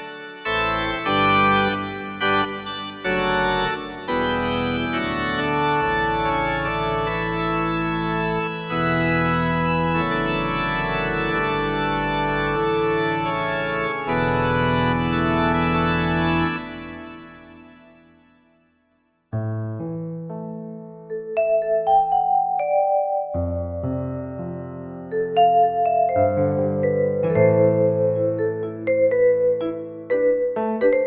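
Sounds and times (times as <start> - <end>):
organ chords on keyboard: 0.0 - 18.5, 19.3 - 31.0.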